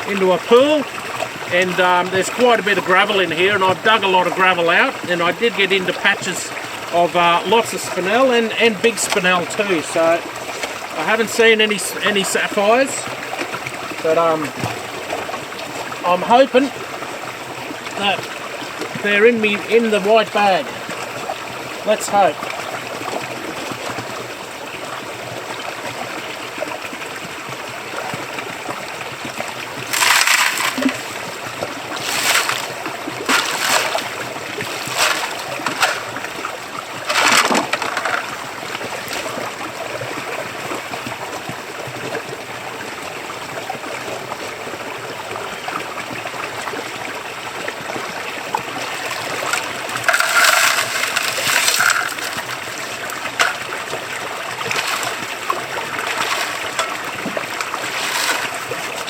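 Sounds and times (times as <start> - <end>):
creek water flowing: 0.0 - 59.0
splashing and gravel scraping: 29.8 - 39.3, 48.8 - 59.0.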